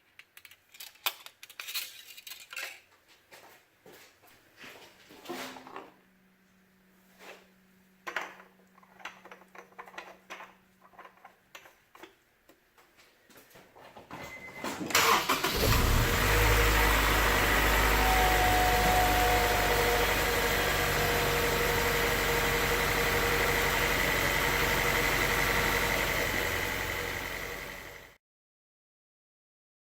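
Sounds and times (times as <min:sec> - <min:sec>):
car engine starting and idling: 0:14.9 - 0:28.2.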